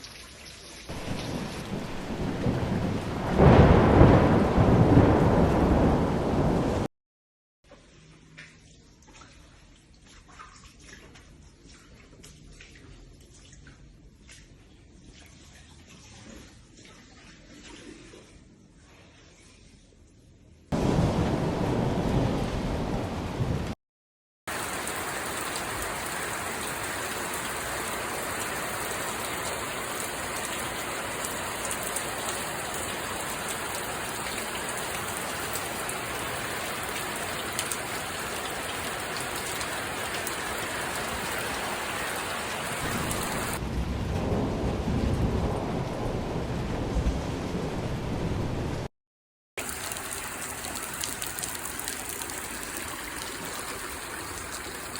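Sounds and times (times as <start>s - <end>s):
heavy rain hissing: 0.9s - 4.3s, 24.5s - 43.6s
deep rushing rain noise: 0.9s - 6.9s, 20.7s - 23.8s, 24.5s - 48.9s.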